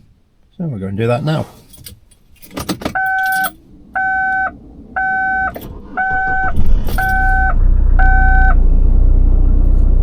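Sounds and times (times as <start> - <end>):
truck warning chime beeping: 2.9 - 8.6
truck engine running: 2.9 - 10.0.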